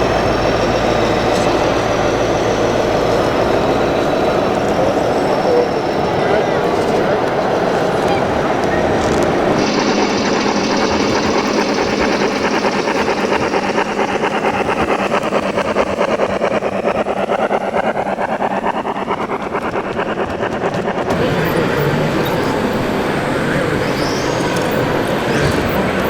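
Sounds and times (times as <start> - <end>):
model machine motors whirring: 0.0 - 16.2
high motor whine: 0.0 - 26.0.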